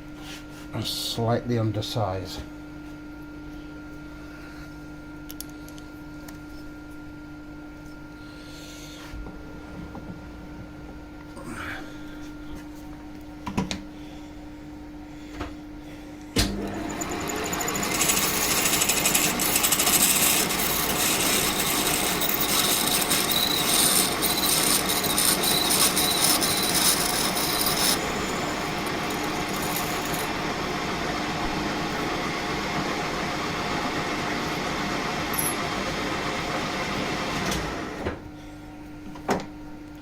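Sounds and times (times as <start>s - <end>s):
lathe running: 16.4s - 37.4s
drill bit cutting steel hiss: 16.6s - 30.5s.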